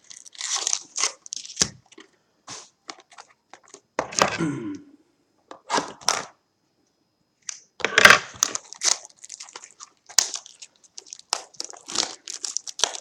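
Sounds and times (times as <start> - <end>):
packaging tearing: 0.0 - 1.8, 8.2 - 13.0
cardboard and plastic crinkling: 0.0 - 2.2, 7.9 - 13.0
small crackles: 0.0 - 2.2, 8.3 - 13.0.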